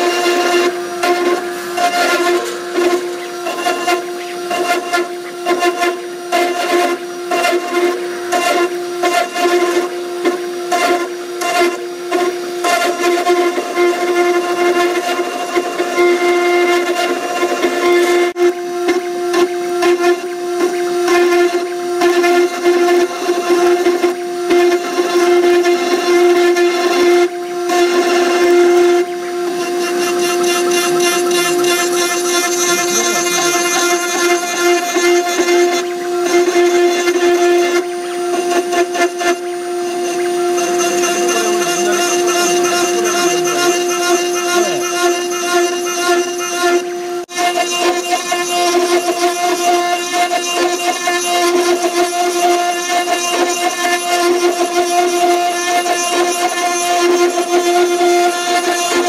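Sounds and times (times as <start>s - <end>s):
spindle whine: 20.3s - 47.3s
cutter ticking and chatter: 29.6s - 37.4s, 40.0s - 46.5s.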